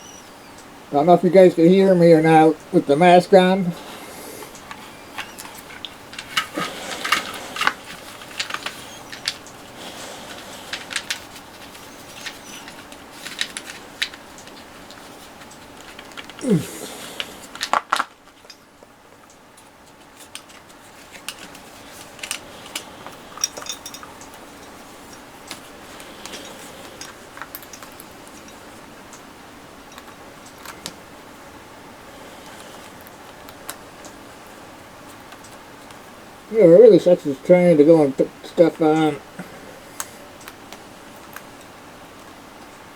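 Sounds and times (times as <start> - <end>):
gear clicking and rustling: 0.0 - 31.1.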